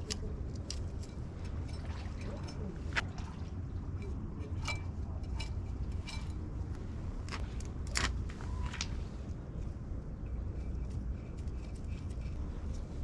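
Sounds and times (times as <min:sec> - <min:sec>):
light metallic clicks and clinks: 0:00.0 - 0:02.8, 0:03.9 - 0:08.1
steady low rumble: 0:00.0 - 0:13.0.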